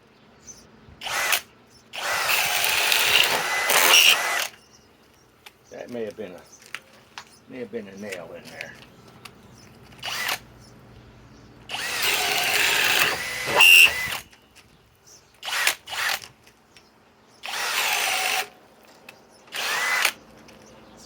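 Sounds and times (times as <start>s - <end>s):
drill whining in bursts: 1.0s - 1.4s, 2.0s - 4.6s, 10.0s - 10.4s, 11.7s - 14.3s, 15.4s - 16.2s, 17.4s - 18.5s, 19.5s - 20.2s.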